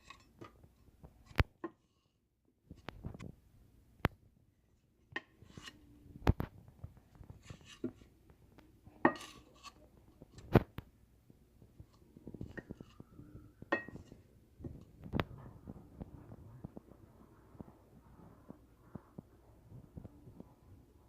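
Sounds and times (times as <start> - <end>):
quiet handling sounds: 0.0 - 21.0
utensils and dishes clinking: 13.7 - 14.2.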